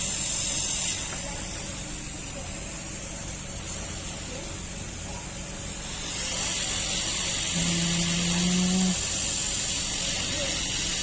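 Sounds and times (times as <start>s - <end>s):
hot air gun hissing: 0.0s - 2.0s, 5.7s - 11.0s
low steady hum: 7.4s - 9.4s.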